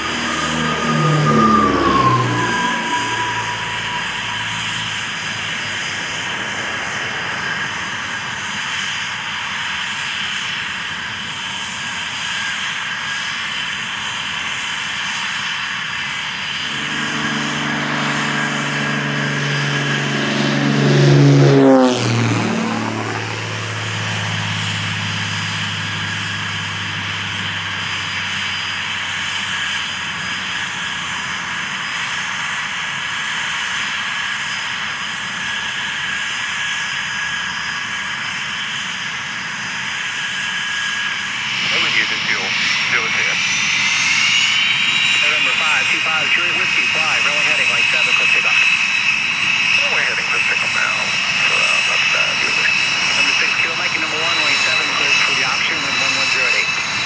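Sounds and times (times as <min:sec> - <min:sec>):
aircraft passing close by: 0:00.0 - 0:57.0
steady engine whine: 0:00.0 - 0:57.0.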